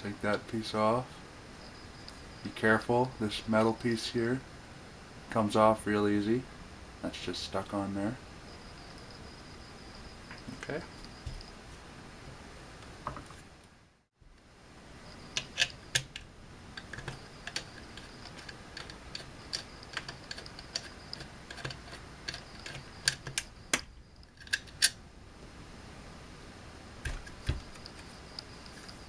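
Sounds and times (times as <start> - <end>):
small metal clicks and knocks: 15.3 - 25.0.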